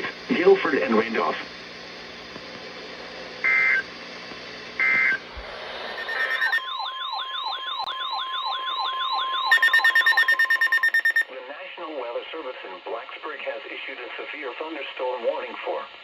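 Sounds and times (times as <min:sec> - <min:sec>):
digital data tone bursts: 0:05.8 - 0:11.2
electronic warbling siren: 0:05.8 - 0:11.2
rapid electronic beeping: 0:05.8 - 0:11.2.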